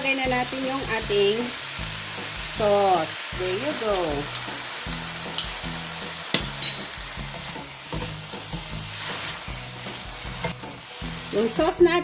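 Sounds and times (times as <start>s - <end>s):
vegetables sizzling in frying pan: 0.0s - 12.0s
utensil clicking against pan: 3.8s - 4.6s.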